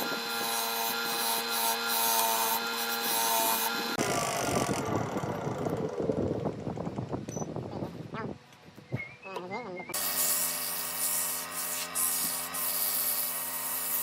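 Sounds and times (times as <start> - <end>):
power tool motor on wood: 0.0 - 6.1, 9.9 - 14.0.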